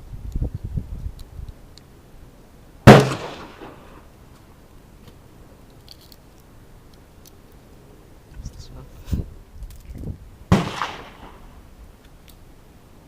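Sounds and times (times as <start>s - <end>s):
handgun shot echoing: 2.9s - 3.9s, 10.5s - 11.5s.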